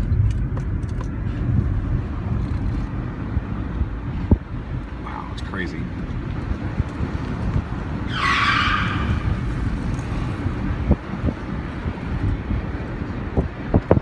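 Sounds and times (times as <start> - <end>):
road and engine rumble inside car: 0.0 - 14.0
tyres hissing on road: 4.1 - 13.8.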